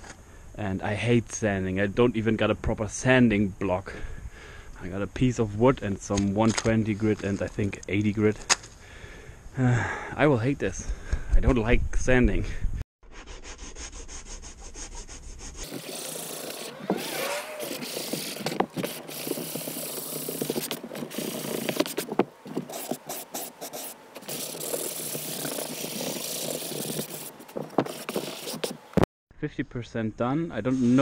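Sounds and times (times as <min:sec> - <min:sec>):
sandpaper rasping on wood: 0:13.2 - 0:28.9.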